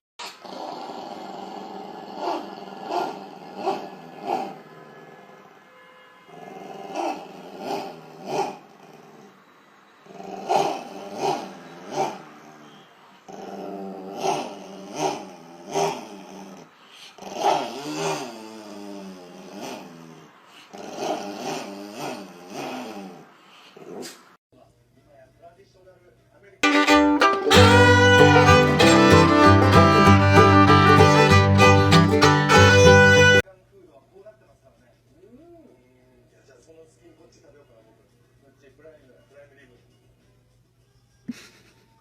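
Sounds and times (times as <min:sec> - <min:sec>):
dog growling: 0:00.3 - 0:04.6, 0:06.4 - 0:09.2, 0:13.3 - 0:23.2.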